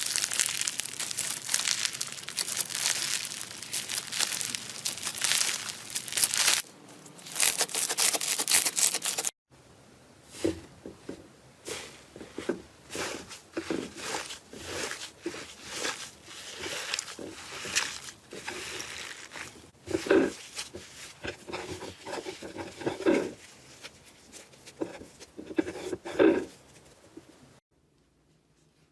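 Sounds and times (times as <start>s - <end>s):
slime crackling: 0.0s - 6.6s, 13.0s - 23.3s
slime squelching and popping: 0.0s - 6.6s.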